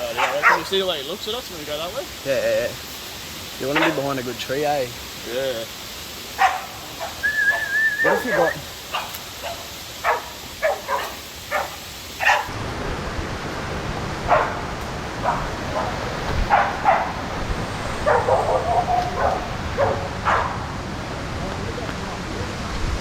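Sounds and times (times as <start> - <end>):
dogs barking: 0.0 - 0.9, 3.7 - 4.1, 6.3 - 12.5, 14.3 - 20.8
steady rushing hiss: 0.0 - 23.0.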